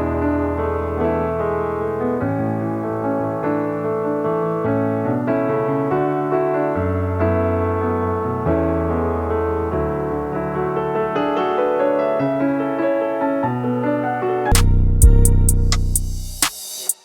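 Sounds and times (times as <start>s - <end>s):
piano music: 0.0s - 16.9s.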